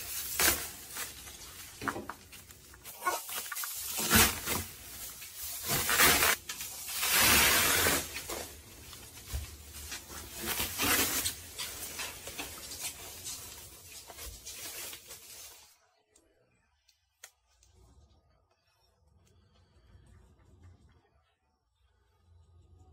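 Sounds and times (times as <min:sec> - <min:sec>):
rubbing and scraping: 0:00.0 - 0:15.8.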